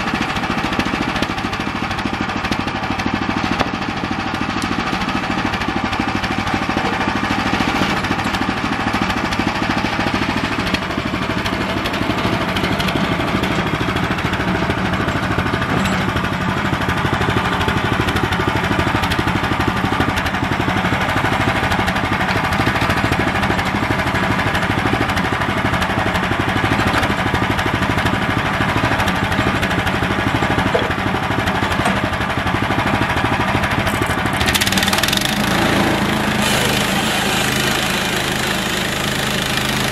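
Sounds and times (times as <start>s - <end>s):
gas engine running: 0.0s - 39.9s
band saw cutting log: 33.7s - 39.9s.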